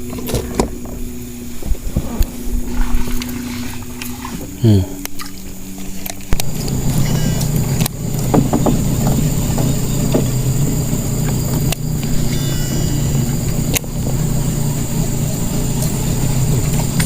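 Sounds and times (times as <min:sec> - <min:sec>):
boat engine running: 0:00.0 - 0:17.0.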